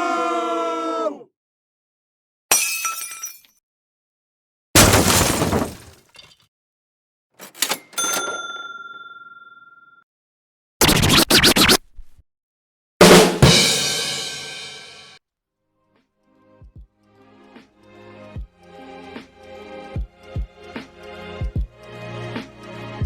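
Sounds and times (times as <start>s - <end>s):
noisy crash: 4.8s - 6.0s
ringing ding: 7.7s - 10.0s.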